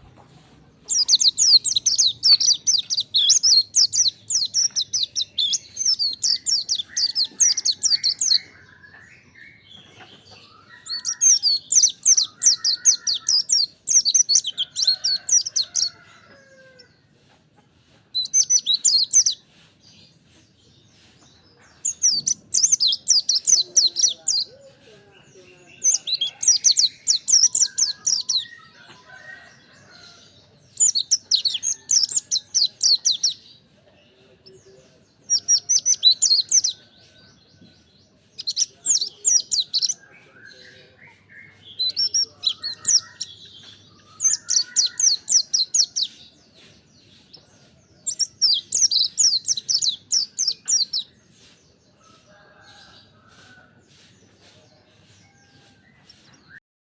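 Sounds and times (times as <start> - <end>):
bird singing high twittering: 0.9 - 16.9.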